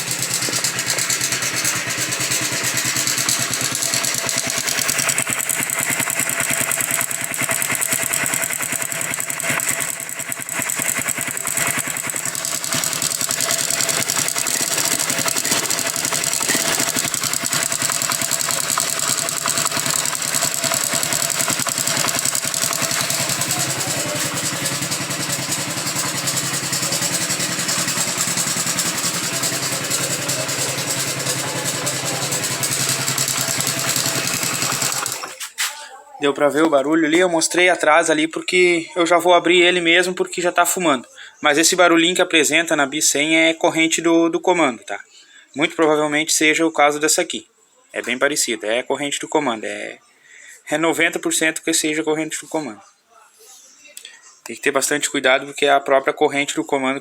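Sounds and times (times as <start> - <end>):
fast metallic cam chain rattle: 0.0 - 35.4
motorcycle engine running: 0.0 - 35.4.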